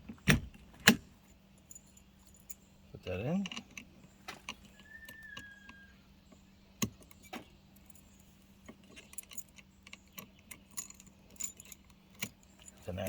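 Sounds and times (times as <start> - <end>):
keys jangling against lock: 3.3 - 4.7, 7.0 - 13.0.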